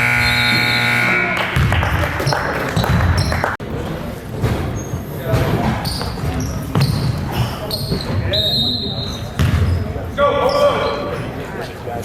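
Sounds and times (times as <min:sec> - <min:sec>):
scoreboard buzzer tone: 0:00.0 - 0:01.7
basketball bouncing: 0:01.4 - 0:03.4, 0:09.4 - 0:09.8.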